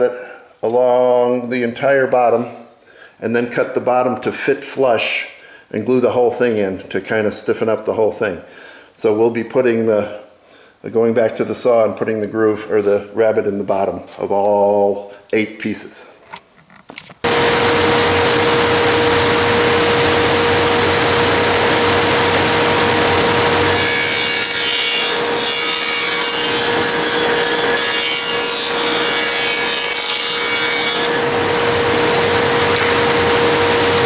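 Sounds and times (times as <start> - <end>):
power saw running: 17.2 - 34.0
saw blade cutting wood: 17.2 - 34.0.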